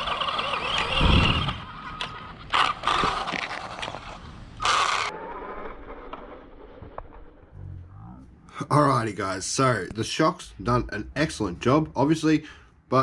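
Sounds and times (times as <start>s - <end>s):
rc car motor grinding: 0.0s - 7.0s.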